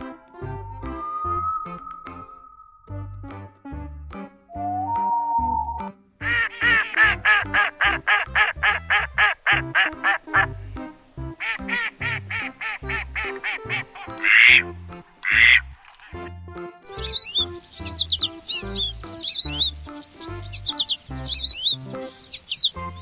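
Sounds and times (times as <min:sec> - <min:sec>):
background music: 0:00.0 - 0:23.0
duck quacking: 0:06.2 - 0:16.3, 0:17.0 - 0:23.0.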